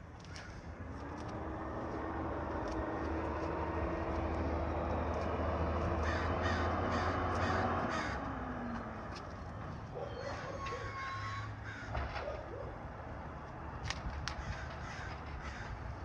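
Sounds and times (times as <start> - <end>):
truck engine running: 0.7 - 12.0
crow cawing: 6.0 - 8.3, 10.3 - 12.1, 14.4 - 15.8.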